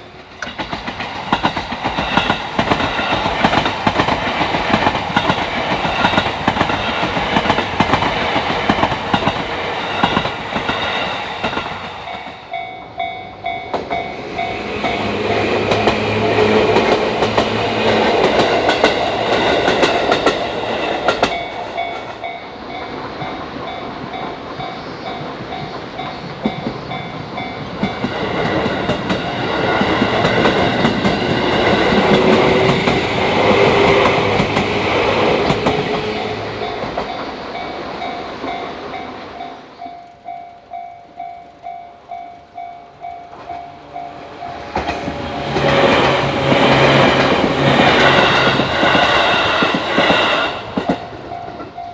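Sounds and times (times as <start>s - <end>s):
train wheels clattering on rails: 0.0s - 39.9s, 43.1s - 51.9s
crossing warning bell ringing: 11.9s - 17.3s, 21.2s - 28.2s, 35.8s - 51.9s.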